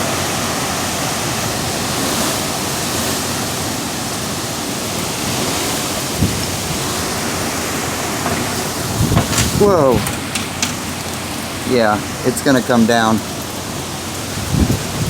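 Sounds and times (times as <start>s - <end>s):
wind and heavy rain rushing: 0.0s - 15.0s
low thump: 6.2s - 6.9s, 8.2s - 10.7s.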